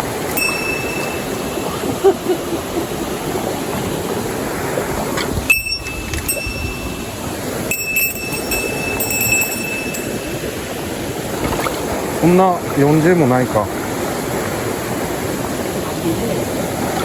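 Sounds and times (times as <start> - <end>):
thin high steady tone: 0.3 - 2.8, 5.5 - 11.2
stream splashing over stones: 10.3 - 17.0.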